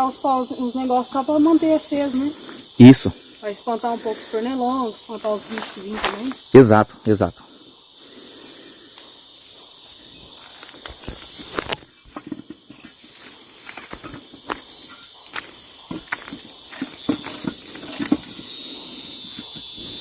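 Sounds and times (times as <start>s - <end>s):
crickets and insects chorus: 0.0s - 20.0s
sharp crackles and pops: 5.5s - 6.4s, 10.2s - 18.0s.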